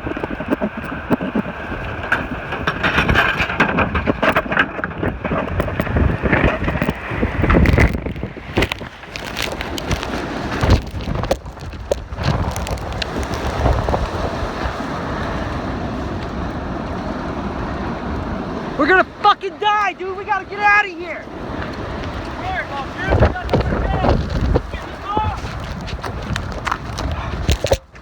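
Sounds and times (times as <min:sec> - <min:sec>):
sharp knocks and rattles: 0:00.0 - 0:14.0
engine and tyres rumbling: 0:00.0 - 0:20.3, 0:21.0 - 0:28.0
wind and fire rushing: 0:00.0 - 0:28.0.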